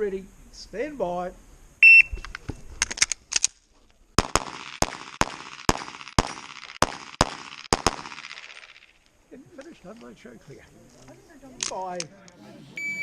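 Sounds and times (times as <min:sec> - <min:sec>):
faint sharp cracks: 0:02.2 - 0:10.2
pistol shots with echo: 0:04.2 - 0:08.4.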